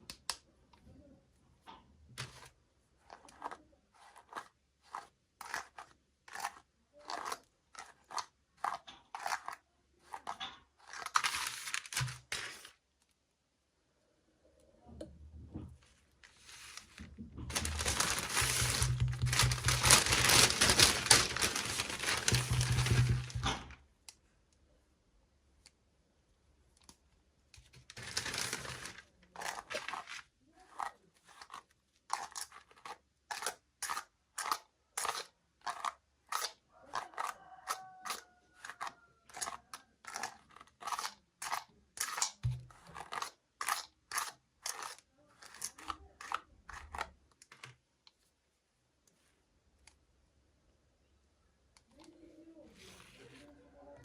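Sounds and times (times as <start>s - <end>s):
plastic packaging crinkling and tearing: 10.2s - 12.7s, 16.3s - 23.8s, 27.7s - 32.6s.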